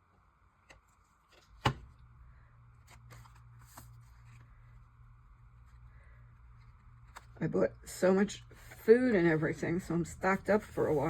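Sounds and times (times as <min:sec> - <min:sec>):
low steady hum: 0:00.0 - 0:11.0
paper clicks and rustles: 0:02.8 - 0:04.6.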